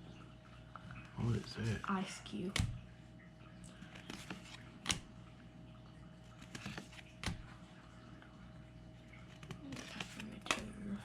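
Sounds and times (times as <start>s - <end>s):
trading cards sliding and rustling: 3.8s - 5.0s, 6.4s - 7.4s, 9.2s - 10.7s
sharp card clicks: 4.0s - 5.1s, 6.4s - 7.4s.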